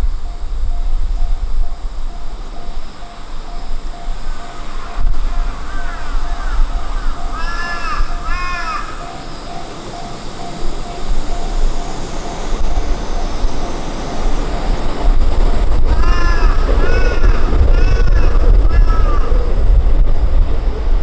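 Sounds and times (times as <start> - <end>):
level crossing warning bell ringing: 0.0 - 18.0
train rumbling: 0.0 - 21.0
harsh bird calls: 4.4 - 14.9, 15.9 - 19.4.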